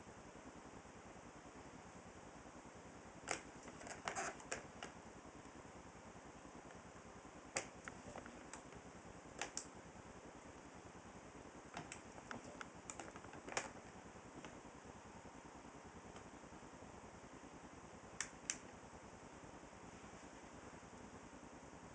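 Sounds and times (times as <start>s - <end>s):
faint steady hiss: 0.0s - 21.9s
light clicks and taps: 9.4s - 9.7s, 11.7s - 14.6s.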